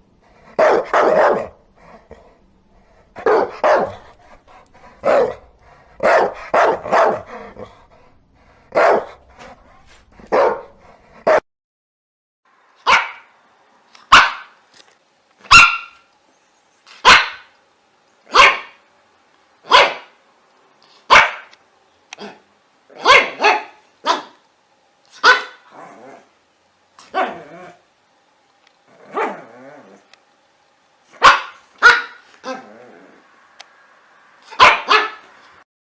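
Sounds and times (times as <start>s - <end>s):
dog barking: 0.6s - 1.6s, 3.2s - 4.0s, 5.0s - 5.4s, 6.0s - 7.3s, 8.7s - 9.2s, 10.2s - 11.4s, 12.8s - 13.3s, 14.1s - 14.6s, 15.5s - 16.1s, 17.0s - 17.5s, 18.3s - 18.8s, 19.6s - 20.2s, 21.1s - 21.6s, 23.0s - 24.4s, 25.2s - 25.7s, 31.2s - 32.3s, 34.5s - 35.3s.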